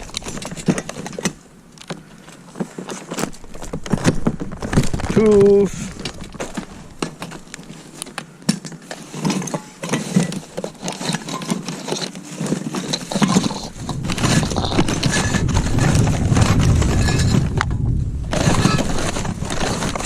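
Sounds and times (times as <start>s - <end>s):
scrap metal and tools clanking: 5.7s - 17.6s, 18.3s - 20.0s
low rumble: 13.7s - 19.6s.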